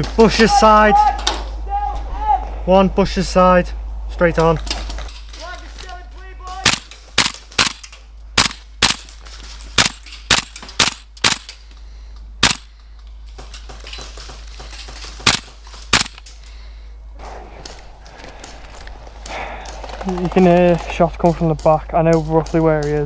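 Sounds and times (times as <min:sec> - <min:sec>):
airsoft rifle shots: 0:06.4 - 0:07.8, 0:08.4 - 0:09.1, 0:09.7 - 0:11.6, 0:12.4 - 0:12.7, 0:14.2 - 0:16.2.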